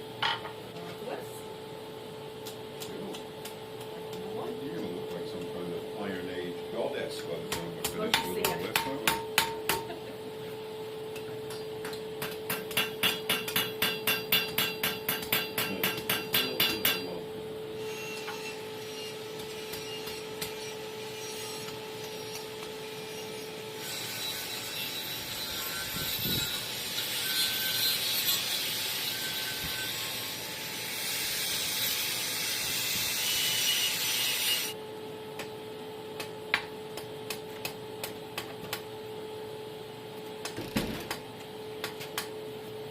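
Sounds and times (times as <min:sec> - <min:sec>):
steady hum: 0:00.0 - 0:23.8
hammer striking steel on anvil: 0:07.5 - 0:09.9, 0:11.5 - 0:17.2
rasping scrape of steel: 0:23.0 - 0:34.7.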